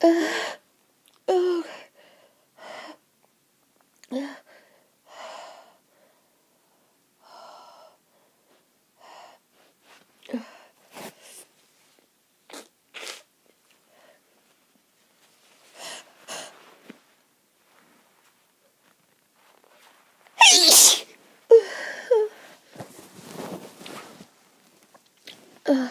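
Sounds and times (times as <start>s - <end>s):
person sneezing: 20.4s - 21.1s.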